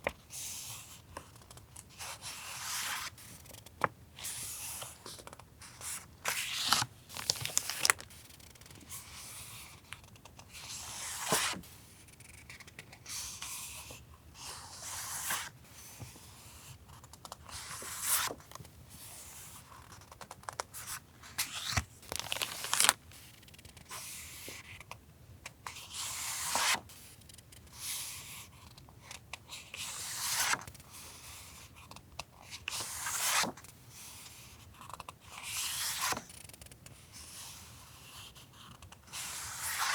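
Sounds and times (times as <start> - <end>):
paper rustling: 5.2 - 8.2, 20.2 - 23.1.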